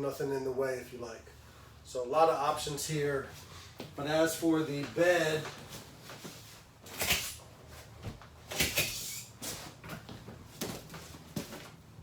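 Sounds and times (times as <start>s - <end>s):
furniture parts knocking and thumping: 9.5s - 11.8s.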